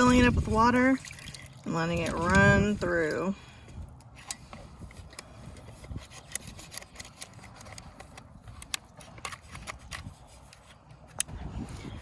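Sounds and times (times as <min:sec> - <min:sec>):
rubbing on plastic buckle: 0:04.2 - 0:10.8.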